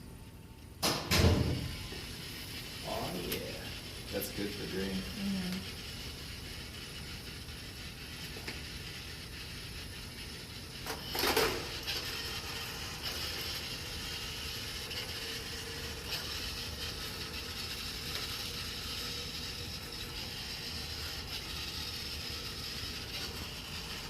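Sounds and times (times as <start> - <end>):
robot vacuum whirring rattle: 1.8 - 24.0
robot vacuum clatter: 10.8 - 24.0.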